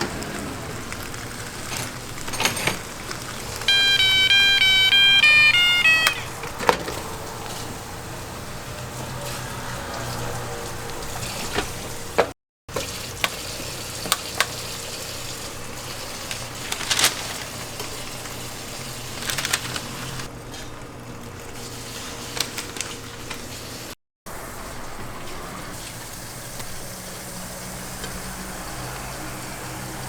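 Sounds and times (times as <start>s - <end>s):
utensils clicking and clattering: 0.0s - 7.7s, 16.2s - 20.7s.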